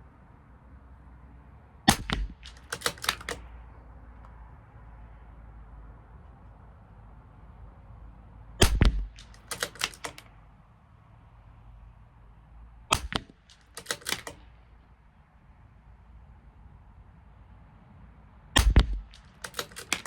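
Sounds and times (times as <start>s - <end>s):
rifle shots: 1.9s - 3.5s, 8.6s - 10.3s, 12.9s - 14.4s, 18.6s - 20.0s
metallic clicks of rifle bolt: 1.9s - 3.6s, 8.6s - 10.4s, 12.9s - 14.6s, 18.6s - 20.0s.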